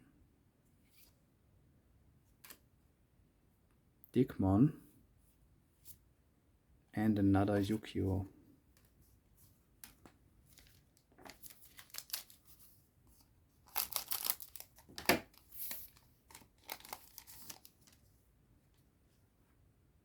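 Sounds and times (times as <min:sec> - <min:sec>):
foil wrapper tearing and crinkling: 0:10.6 - 0:12.4, 0:13.7 - 0:18.0.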